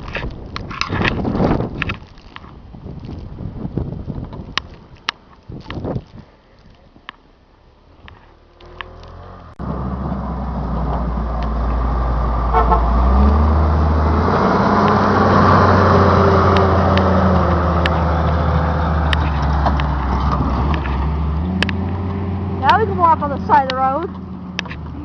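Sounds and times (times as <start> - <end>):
road noise: 0.0 - 25.0
truck engine passing: 8.4 - 25.0.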